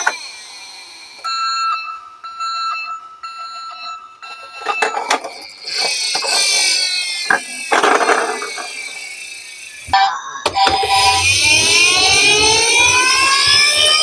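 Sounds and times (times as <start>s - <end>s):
toy ambulance siren: 0.0s - 14.0s
toy cars rattling down a slope: 4.6s - 9.9s.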